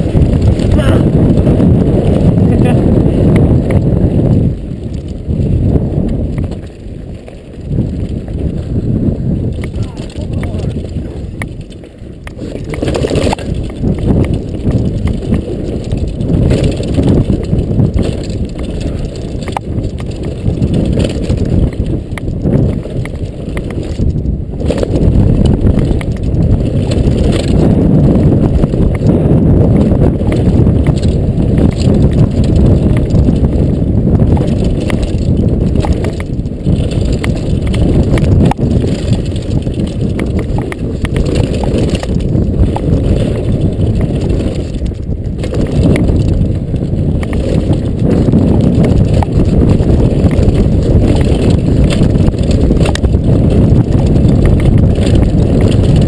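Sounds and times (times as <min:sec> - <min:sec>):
bike chain and frame rattling: 0:00.0 - 0:56.0
wind and tyres on dirt rumble: 0:00.0 - 0:56.0.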